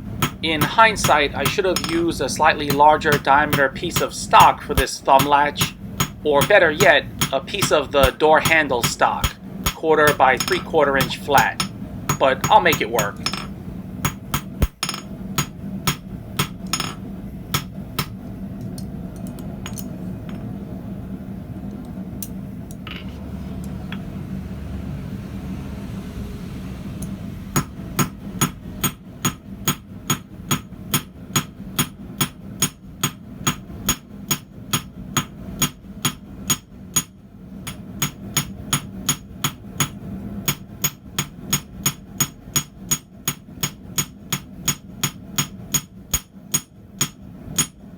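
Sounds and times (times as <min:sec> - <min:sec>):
steady low hum: 0:00.0 - 0:47.9
hammer striking steel on anvil: 0:00.2 - 0:18.2, 0:27.6 - 0:37.1, 0:37.7 - 0:47.8.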